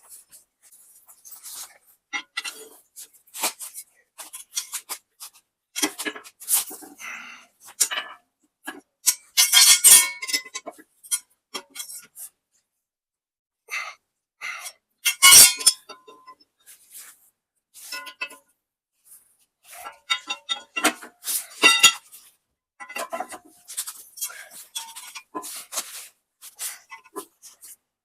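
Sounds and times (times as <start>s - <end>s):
metal tools clinking on metal: 9.1s - 11.2s, 15.0s - 16.3s, 19.8s - 22.0s, 22.8s - 23.4s.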